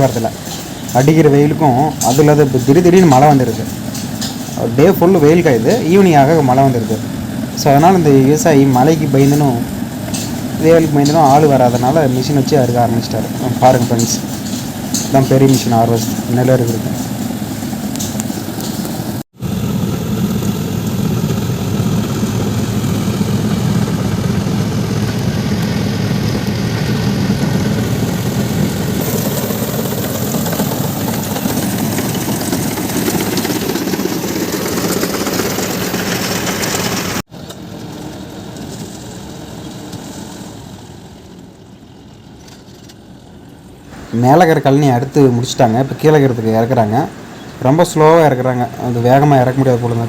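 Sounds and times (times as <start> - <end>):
combine harvester engine running: 0.0 - 40.4.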